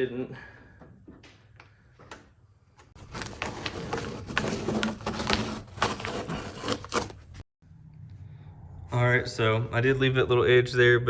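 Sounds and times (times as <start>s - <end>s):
scraping and crackling of body filler: 2.9s - 7.4s.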